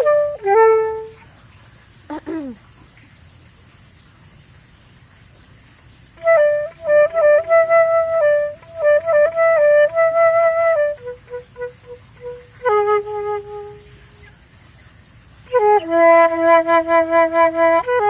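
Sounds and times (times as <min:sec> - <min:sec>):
flute melody: 0:00.0 - 0:01.2, 0:06.2 - 0:14.3, 0:15.5 - 0:18.0.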